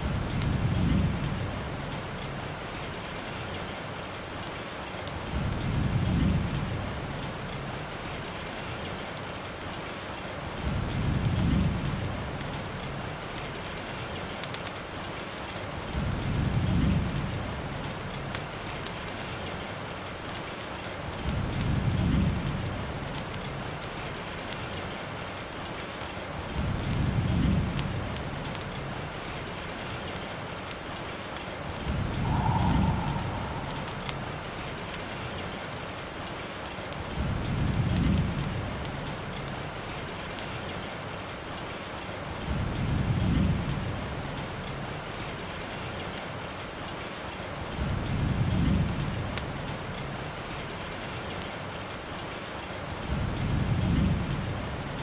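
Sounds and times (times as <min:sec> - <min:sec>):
steady rainfall: 0:00.0 - 0:55.0
low rumble: 0:31.8 - 0:35.4.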